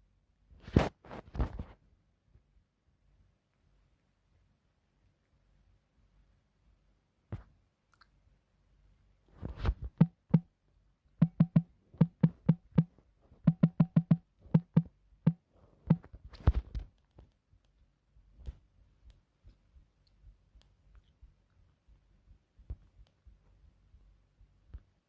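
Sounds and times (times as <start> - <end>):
electronic drum hits: 11.2 - 12.9, 13.5 - 14.9.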